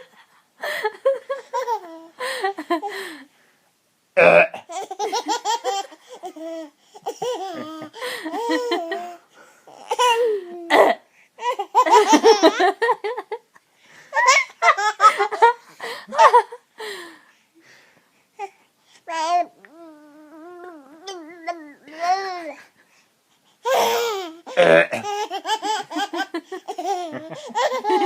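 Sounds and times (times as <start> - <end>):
baby laughing: 1.2 - 2.9, 4.7 - 13.4, 14.1 - 16.6, 19.1 - 22.6, 23.6 - 28.0.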